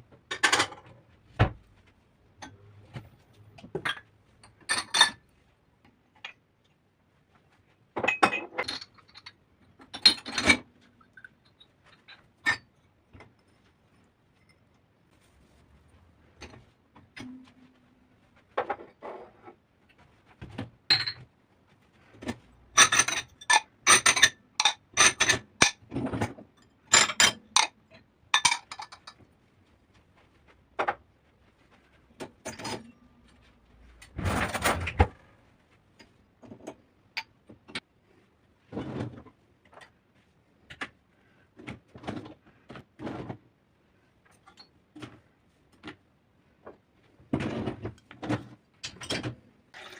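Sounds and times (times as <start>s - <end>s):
dishes and utensils clinking: 20.9s - 21.3s, 22.7s - 25.8s, 26.6s - 29.2s.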